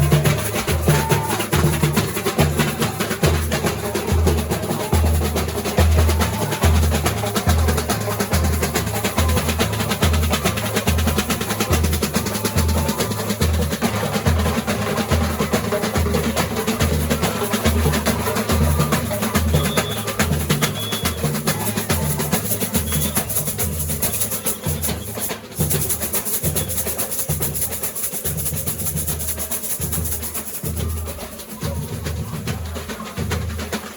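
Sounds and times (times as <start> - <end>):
rattle of snare drums: 0.0 - 33.9.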